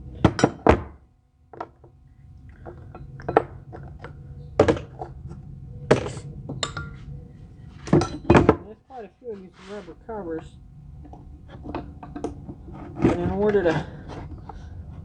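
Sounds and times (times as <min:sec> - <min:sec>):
metal tools knocking and clinking: 0:06.5 - 0:07.0, 0:07.9 - 0:08.6.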